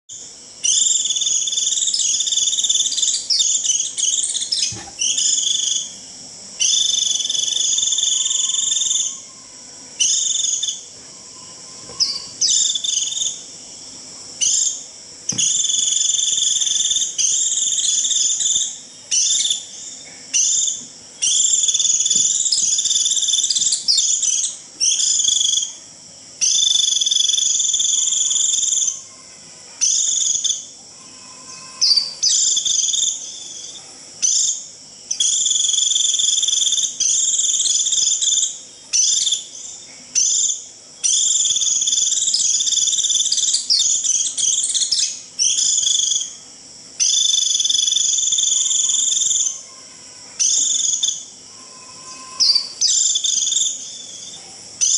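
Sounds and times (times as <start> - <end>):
bird shrill buzzy calls: 6.6 - 13.4, 29.8 - 46.4, 47.0 - 54.9.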